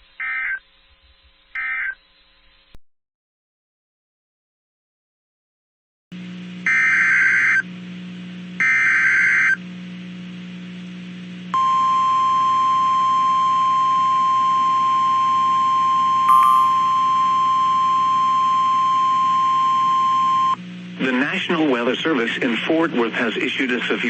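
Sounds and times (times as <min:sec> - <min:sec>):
steady alarm tone: 0:11.6 - 0:20.6.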